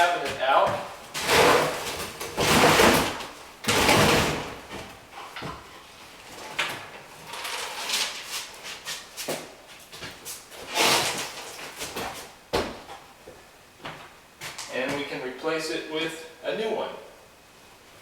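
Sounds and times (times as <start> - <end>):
cabinet scraping against wall: 1.1 - 4.7, 10.6 - 12.0.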